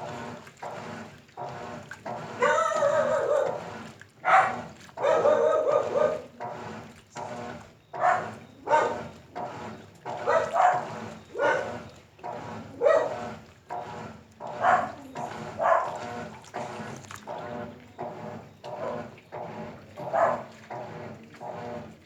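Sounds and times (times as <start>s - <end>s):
dog barking and yelping: 2.4s - 3.6s, 4.3s - 6.3s, 8.0s - 9.0s, 10.2s - 11.8s, 12.8s - 13.2s, 14.6s - 16.0s, 20.1s - 20.5s.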